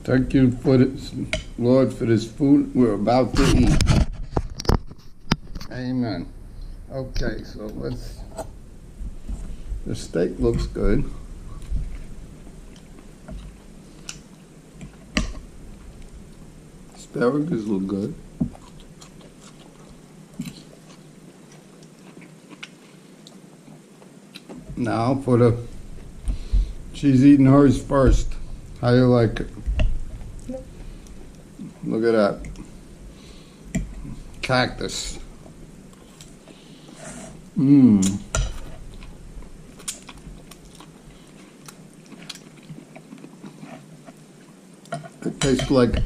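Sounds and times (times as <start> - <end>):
chewing: 11.5 - 15.4, 18.4 - 24.6, 38.0 - 45.3.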